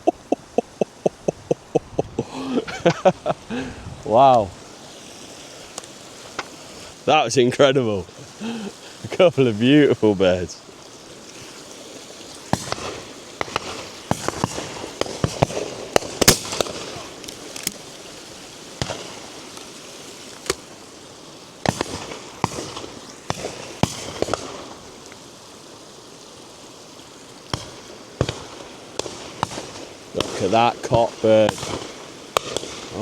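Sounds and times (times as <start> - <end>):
shotguns firing: 12.5 - 17.2, 21.6 - 24.7, 27.5 - 30.7, 31.4 - 33.0.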